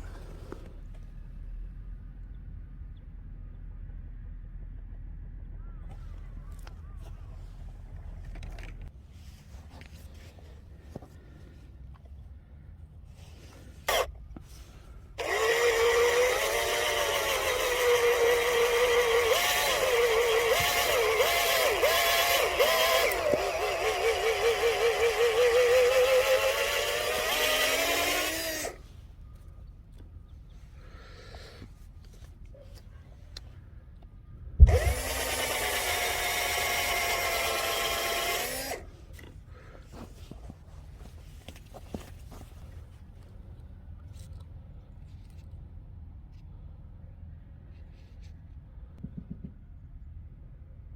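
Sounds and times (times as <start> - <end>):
electric drill motor whining: 13.9 - 14.1, 15.2 - 28.9, 34.6 - 39.3.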